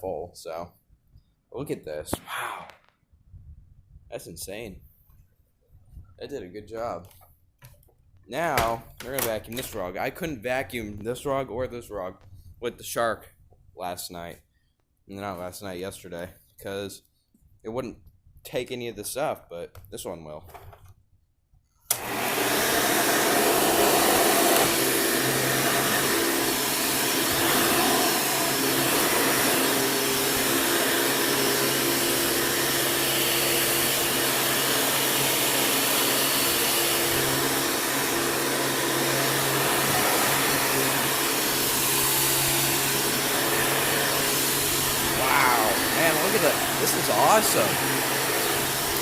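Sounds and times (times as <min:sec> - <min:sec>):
vacuum cleaner switch click: 0:21.9 - 0:22.1
vacuum cleaner motor hum: 0:21.9 - 0:49.0.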